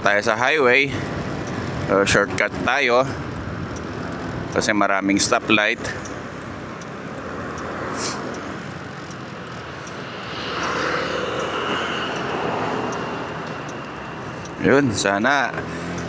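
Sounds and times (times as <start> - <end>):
motorcycle engine: 1.0 - 4.7.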